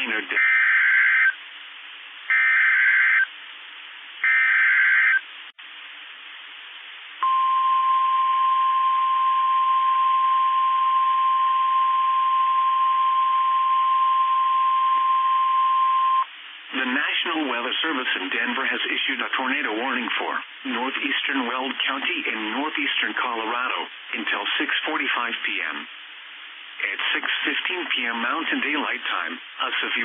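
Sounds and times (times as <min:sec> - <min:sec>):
steady warning alarm tone: 0:07.2 - 0:16.3.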